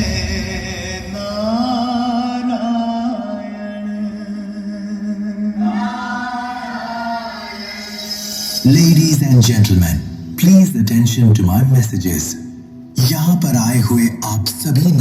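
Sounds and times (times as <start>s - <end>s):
person singing chant-like notes: 0.0s - 8.4s
steady drone: 0.0s - 11.2s.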